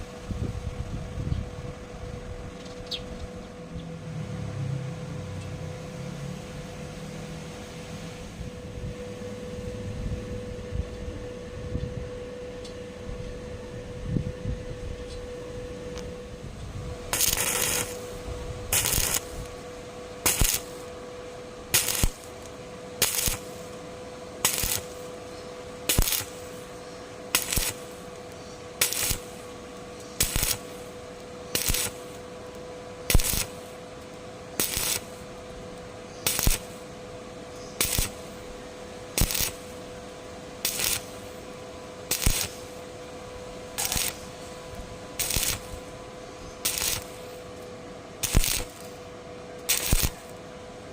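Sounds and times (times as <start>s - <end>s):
arc welding crackle: 0.0s - 0.8s, 15.9s - 50.9s
steady hum: 0.0s - 50.9s.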